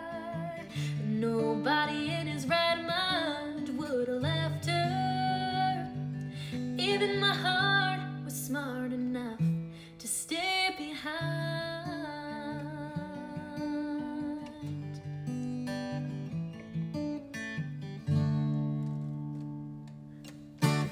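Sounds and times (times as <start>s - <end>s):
woman singing country song: 0.0s - 16.2s
acoustic guitar: 0.0s - 20.9s.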